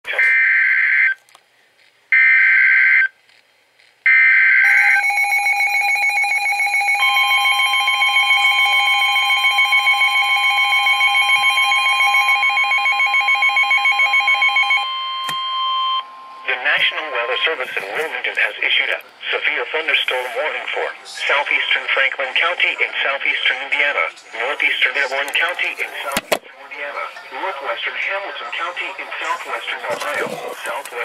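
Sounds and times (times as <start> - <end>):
steady warning alarm tone: 4.1 - 17.8.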